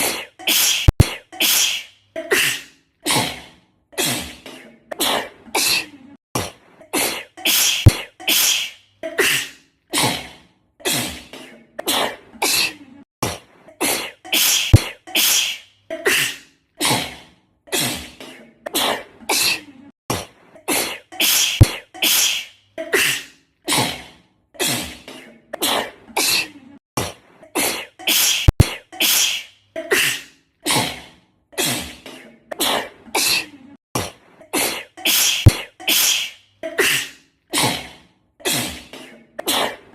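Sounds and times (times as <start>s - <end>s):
girl sneezing: 0.0s - 3.3s, 6.9s - 10.2s, 13.8s - 17.0s, 20.7s - 23.9s, 27.6s - 30.9s, 34.5s - 37.8s.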